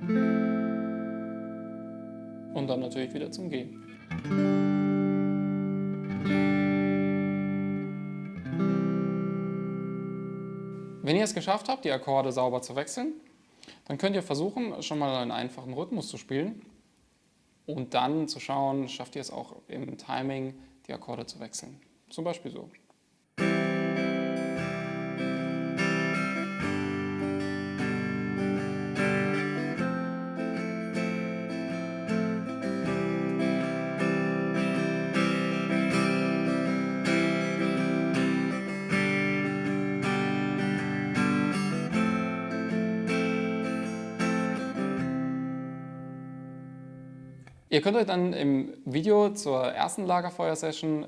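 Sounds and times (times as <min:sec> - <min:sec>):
guitar strumming: 0:00.0 - 0:11.6, 0:23.4 - 0:47.7.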